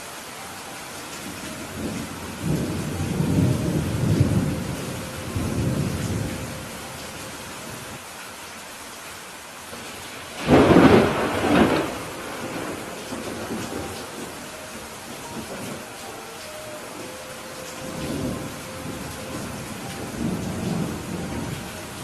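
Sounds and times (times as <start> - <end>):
steady rain: 0.0 - 22.0
thunder rumbling: 1.5 - 6.9, 9.8 - 16.0, 17.0 - 22.0.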